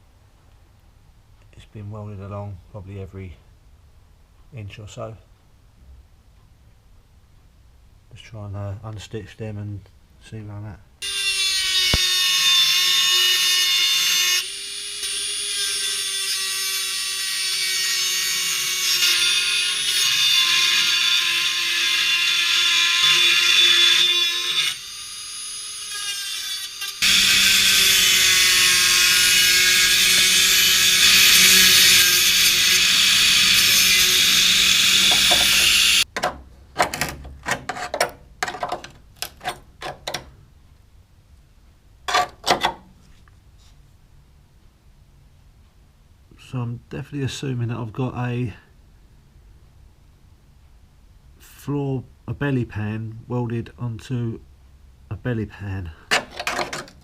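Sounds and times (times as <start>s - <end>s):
electric drill whining: 11.0s - 17.2s, 19.0s - 26.0s, 26.6s - 36.0s.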